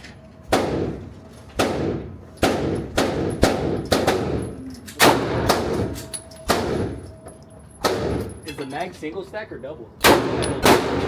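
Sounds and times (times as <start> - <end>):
gunshots with reverberant tail: 0.5 - 7.1, 7.8 - 8.3, 10.0 - 11.0.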